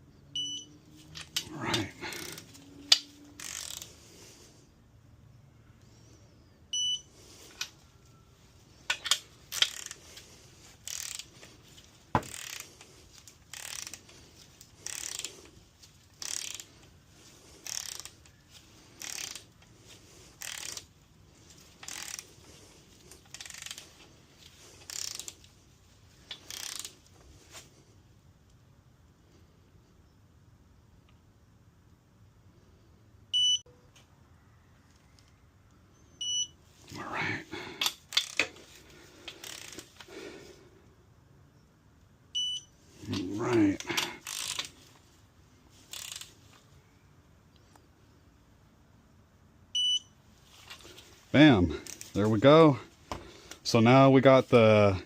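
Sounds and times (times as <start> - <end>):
short electronic beep: 0.4 - 0.8
socket ratchet clicking: 2.1 - 3.9, 8.8 - 10.0, 10.8 - 11.3, 12.2 - 14.1, 14.8 - 15.4, 16.1 - 16.7, 17.6 - 18.3, 19.0 - 19.5, 20.4 - 20.9, 21.8 - 22.3, 23.2 - 24.0, 24.8 - 25.4, 26.3 - 27.0, 39.3 - 39.9, 44.2 - 44.8, 45.9 - 46.4.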